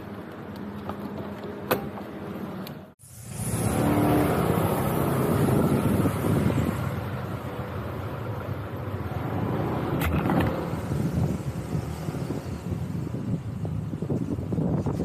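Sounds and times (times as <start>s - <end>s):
motor scooter engine: 3.3s - 13.1s
wind on microphone: 4.2s - 7.3s, 9.8s - 15.0s.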